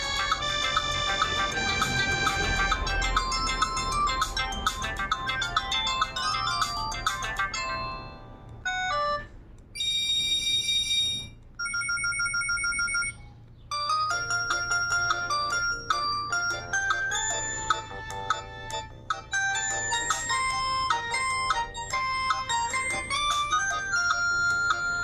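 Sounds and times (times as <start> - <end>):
short notes: 0.0 - 5.2
rapidly pulsing beep: 0.0 - 8.1, 12.8 - 25.0
mobile phone ringtone melody: 0.0 - 25.0.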